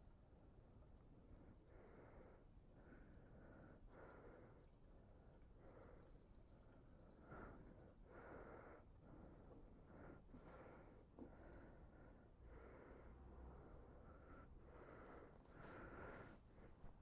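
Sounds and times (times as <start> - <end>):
faint breathing: 1.1 - 17.0.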